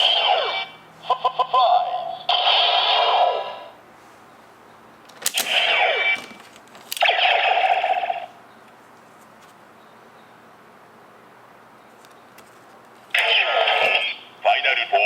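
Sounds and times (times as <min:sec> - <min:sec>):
faint hum: 0:00.0 - 0:15.0.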